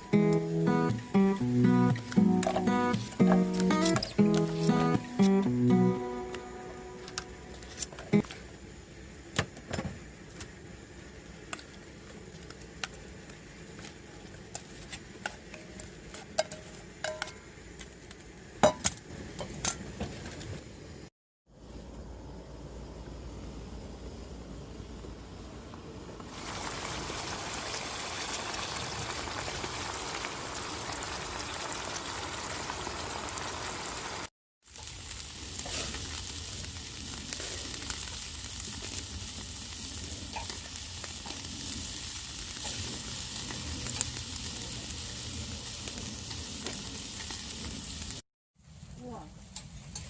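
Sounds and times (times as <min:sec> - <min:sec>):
food sizzling in a pan: 0:00.0 - 0:09.2, 0:26.3 - 0:48.2.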